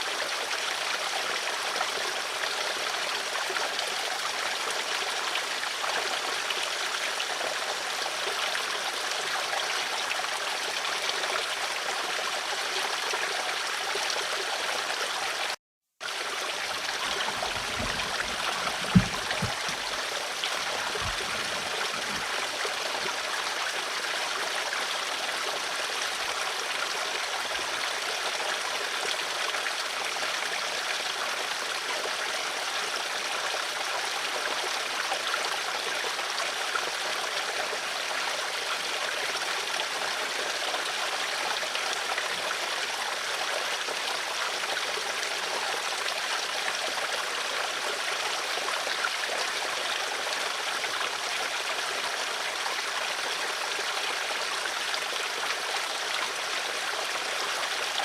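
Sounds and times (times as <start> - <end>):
water flowing: 16.0 - 29.1
soft low thumps: 16.8 - 22.3.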